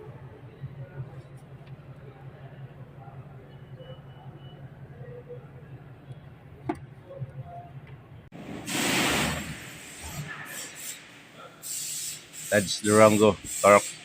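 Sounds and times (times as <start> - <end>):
loud hiss: 8.5 - 14.0.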